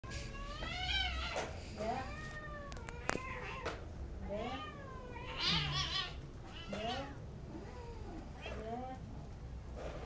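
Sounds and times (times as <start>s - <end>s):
cat meowing: 4.5s - 8.6s.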